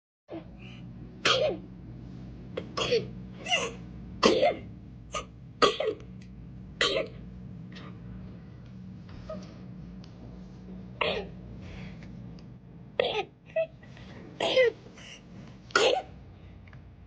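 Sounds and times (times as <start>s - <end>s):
baby coughing: 1.2s - 1.6s, 2.8s - 4.6s, 5.2s - 6.0s, 6.8s - 7.2s, 11.0s - 11.3s, 13.0s - 13.3s, 14.4s - 14.8s, 15.8s - 16.1s.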